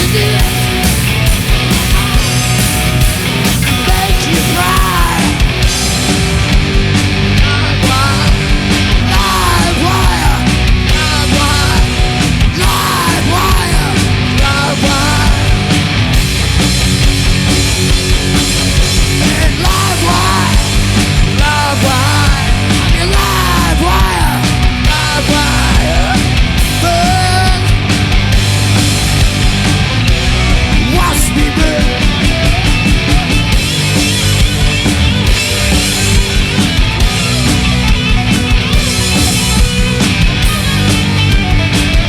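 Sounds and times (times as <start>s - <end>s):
person singing: 0.0s - 0.8s, 3.7s - 5.6s, 7.4s - 15.7s, 19.2s - 27.8s, 30.6s - 32.1s
hard rock band: 0.0s - 42.0s.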